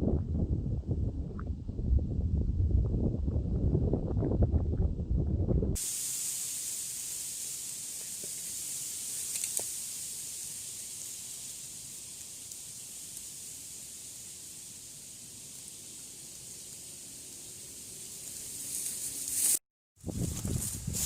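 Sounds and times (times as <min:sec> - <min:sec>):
low rumbling noise: 0:00.0 - 0:05.8
steady high hiss: 0:05.8 - 0:19.6
faint ticks: 0:09.1 - 0:10.5.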